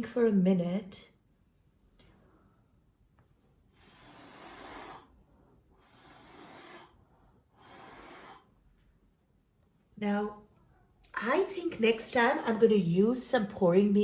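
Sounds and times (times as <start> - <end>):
soft airy exhalations: 3.7 - 8.8.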